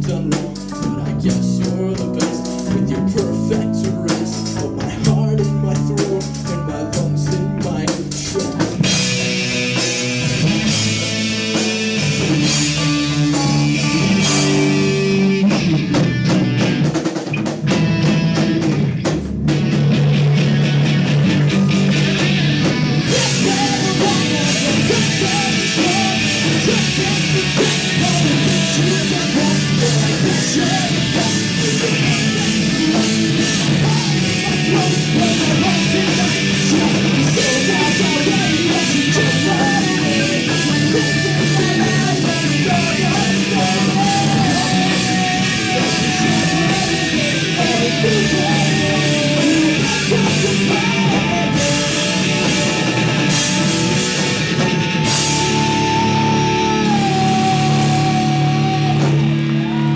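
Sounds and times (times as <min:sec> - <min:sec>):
live rock music: 0:00.0 - 0:59.9
person yelling or singing: 0:23.0 - 0:59.9.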